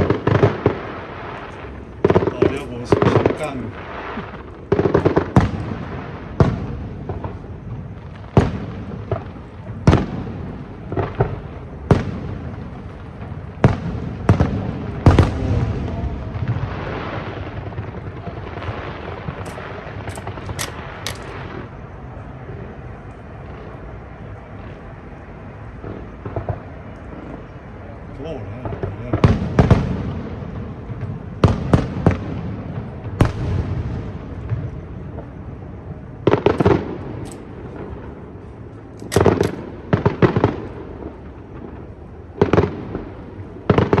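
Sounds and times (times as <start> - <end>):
firework shells bursting: 0.0 - 5.8, 18.7 - 21.7, 36.3 - 40.7
sharp firework cracks: 0.0 - 21.8, 36.3 - 41.8.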